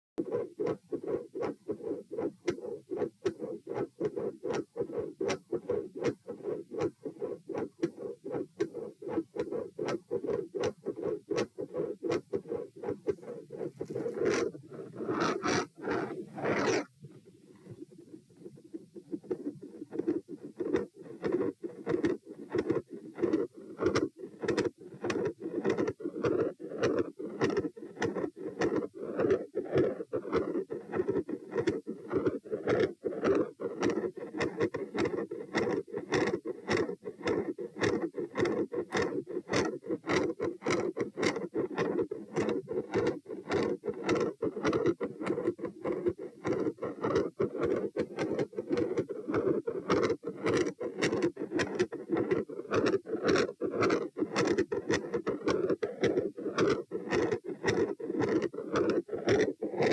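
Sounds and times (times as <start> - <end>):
heartbeat through stethoscope: 0.2 - 16.9.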